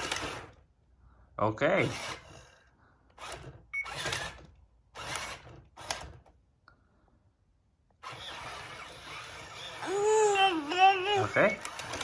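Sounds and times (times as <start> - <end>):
toy robot gear motors whirring: 0.0 - 0.6, 1.8 - 2.6, 3.2 - 6.2, 8.0 - 12.0.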